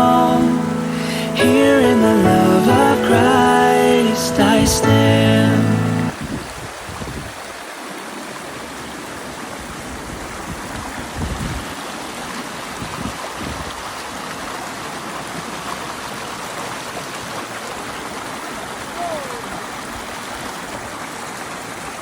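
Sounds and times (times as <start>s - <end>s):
water flowing over rocks: 0.0s - 22.0s.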